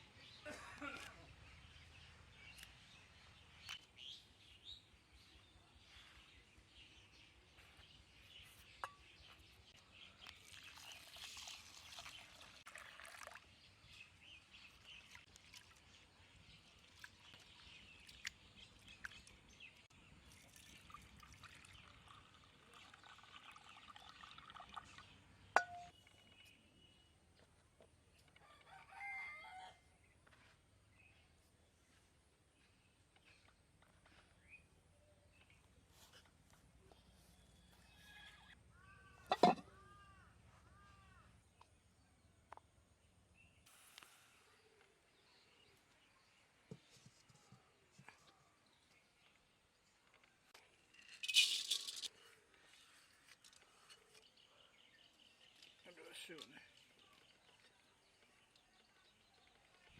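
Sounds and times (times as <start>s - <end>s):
rooster crowing: 28.6s - 29.8s.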